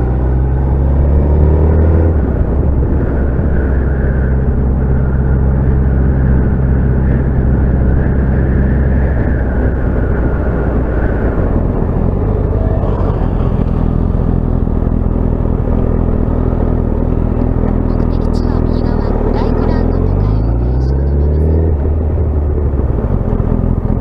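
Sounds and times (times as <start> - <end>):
wind noise: 0.0 - 24.0
motorcycle engine running: 11.5 - 24.0.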